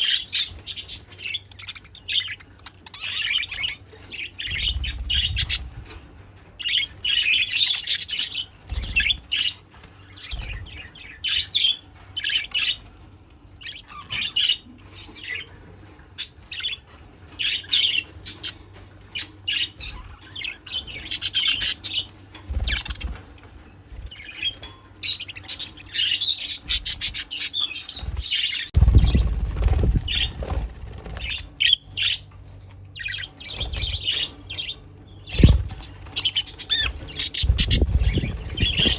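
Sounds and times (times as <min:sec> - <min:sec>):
low rumble: 0:28.8 - 0:31.6
budgerigars chirping: 0:33.0 - 0:38.9.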